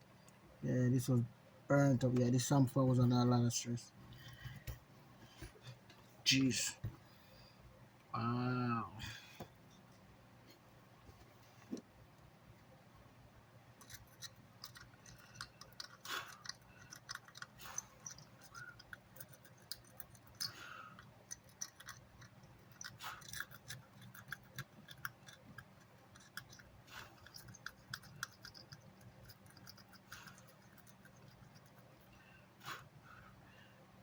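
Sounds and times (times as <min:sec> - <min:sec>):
faint low hum: 0:00.0 - 0:34.0
tools clicking and scratching on circuit board: 0:13.8 - 0:32.2.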